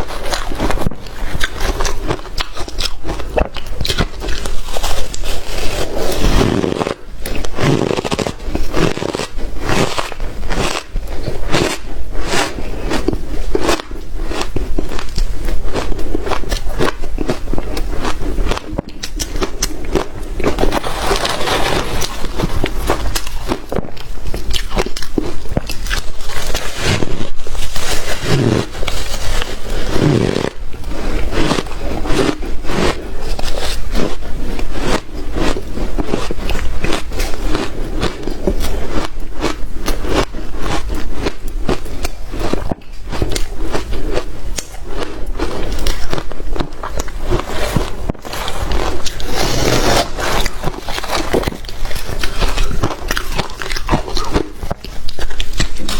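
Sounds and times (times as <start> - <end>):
shaved ice crunching: 48.3 - 54.5.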